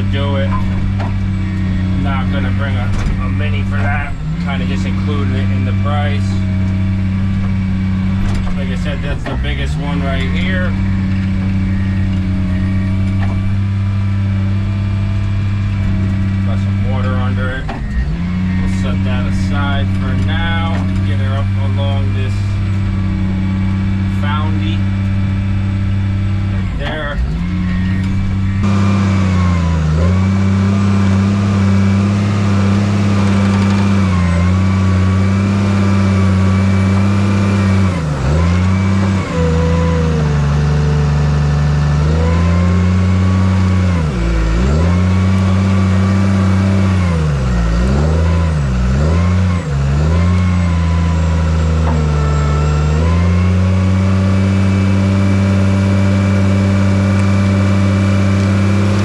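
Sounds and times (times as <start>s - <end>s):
bulldozer diesel engine lugging: 0.0s - 59.0s.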